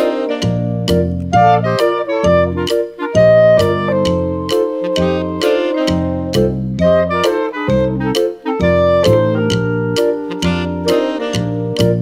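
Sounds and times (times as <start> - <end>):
upbeat music with saxophone lead: 0.0 - 12.0.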